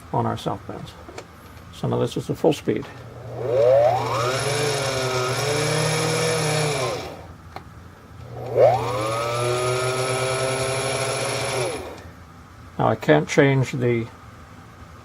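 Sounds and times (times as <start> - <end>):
bench lathe whining: 3.0 - 7.3, 8.2 - 12.1.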